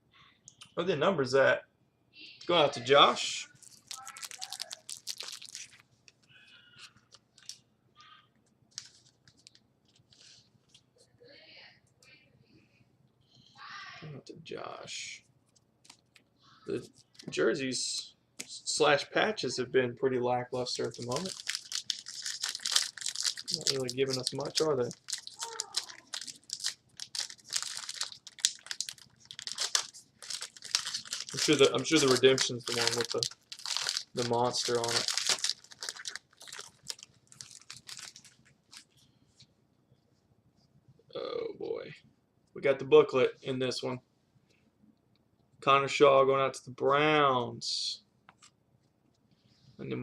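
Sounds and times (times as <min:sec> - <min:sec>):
plastic packaging crinkling: 0:03.5 - 0:05.9, 0:06.9 - 0:07.6, 0:08.7 - 0:10.4, 0:20.6 - 0:39.0
cards clicking and rustling: 0:20.8 - 0:38.9.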